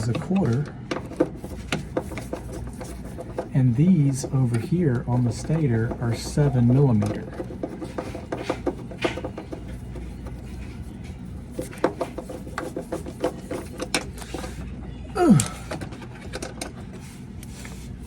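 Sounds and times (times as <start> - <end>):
short falling groan: 15.2 - 15.7.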